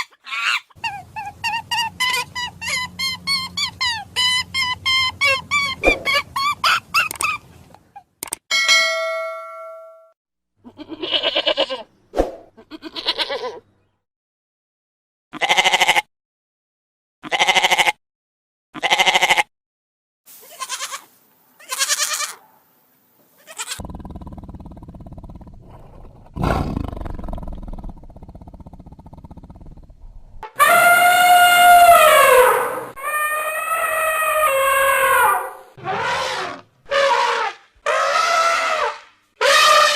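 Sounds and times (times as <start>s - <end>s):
pitched animal calls: 0.0s - 8.1s, 23.4s - 24.0s, 30.4s - 39.9s
ringing tone: 8.5s - 10.2s
rough noisy animal call: 30.4s - 39.9s.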